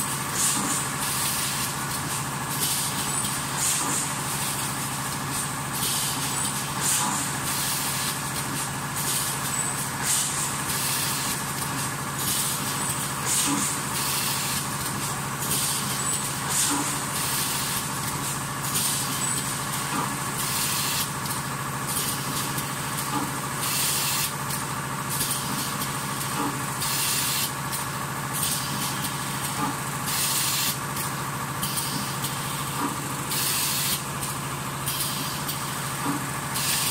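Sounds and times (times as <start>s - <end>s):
machine droning with light knocks: 0.0s - 36.9s
air hiss bursts: 0.3s - 1.7s, 2.6s - 4.6s, 5.4s - 8.2s, 12.2s - 14.7s, 26.8s - 27.5s, 30.1s - 30.8s, 33.3s - 34.0s, 34.9s - 36.9s.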